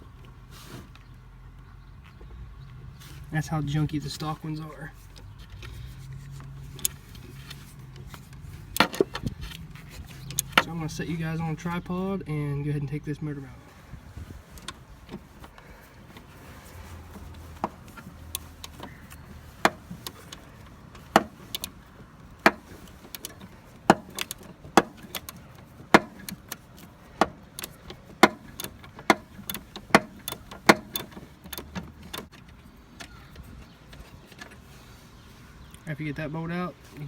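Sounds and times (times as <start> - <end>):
ratchet clicking: 17.1 - 32.4.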